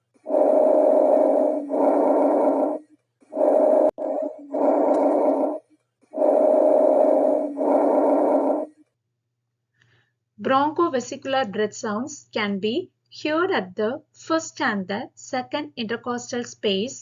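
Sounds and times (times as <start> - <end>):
breath sounds: 0.0 - 8.8, 9.7 - 10.2.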